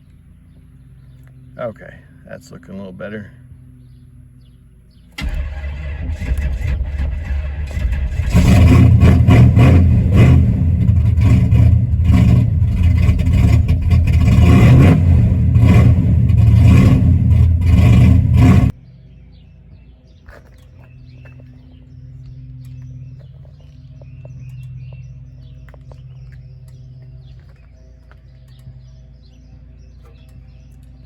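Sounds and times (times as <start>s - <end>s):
bird chirps: 0.0s - 5.2s, 18.8s - 31.0s
car engine revving: 0.0s - 31.0s.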